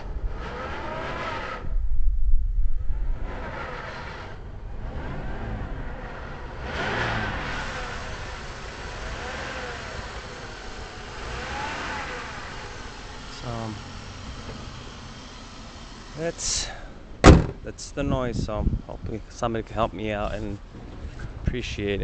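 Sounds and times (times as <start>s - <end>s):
low rumble on microphone: 0.0s - 6.7s, 17.2s - 22.0s
engine whine rising and falling: 0.0s - 16.5s
car engine running: 0.0s - 22.0s.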